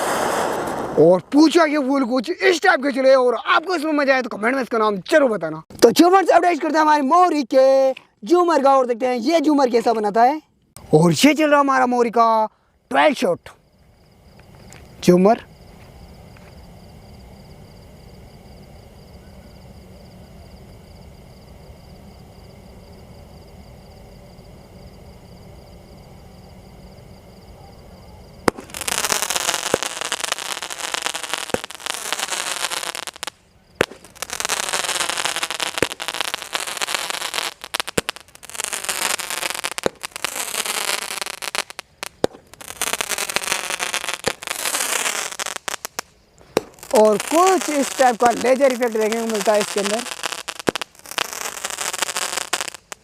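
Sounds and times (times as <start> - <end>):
firework shots hissing and crackling: 0.0 - 3.0, 28.4 - 53.0
firework sharp pop: 28.4 - 28.8, 33.8 - 34.2, 42.2 - 42.5, 46.4 - 46.8.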